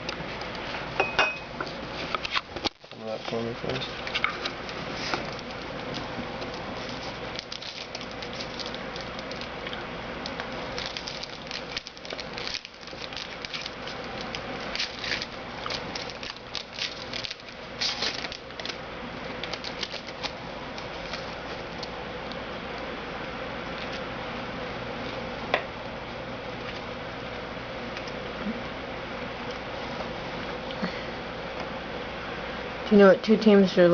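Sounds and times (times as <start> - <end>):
cards rustling and crinkling: 2.2 - 9.5, 10.2 - 18.8, 19.4 - 21.9.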